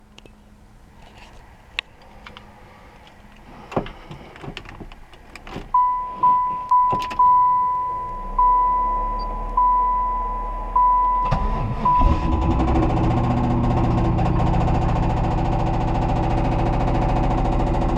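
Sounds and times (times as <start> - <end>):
car engine starting: 0.0 - 17.9
clicks and clunks in car: 2.1 - 7.4
dashboard warning chime dinging: 5.7 - 12.6.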